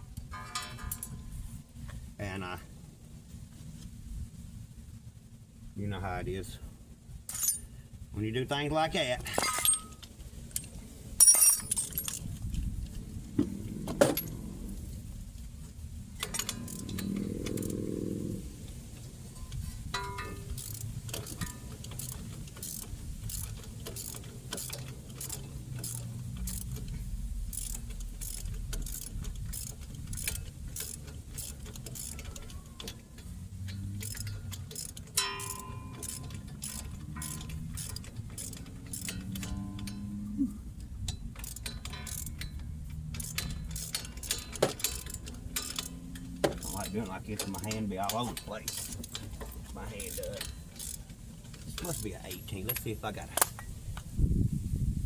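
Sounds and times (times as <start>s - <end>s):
metal tools clinking: 7.3s - 7.7s, 9.2s - 12.5s, 13.4s - 14.8s, 16.2s - 17.8s, 19.0s - 40.2s, 41.0s - 53.7s
ratchet wrench clicking: 16.2s - 40.2s, 40.8s - 53.7s.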